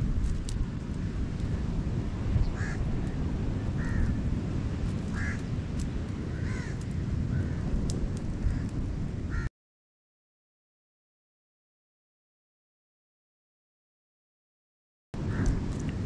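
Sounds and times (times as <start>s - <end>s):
steady low rumble: 0.0s - 9.4s.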